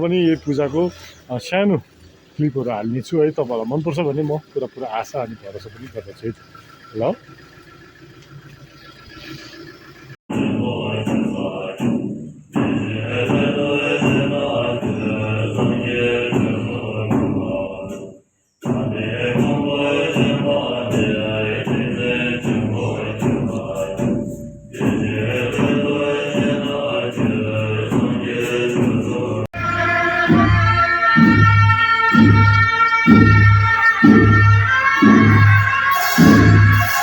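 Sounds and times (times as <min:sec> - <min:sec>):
monks chanting together: 0:10.3 - 0:29.5
instrumental music: 0:29.6 - 0:37.0.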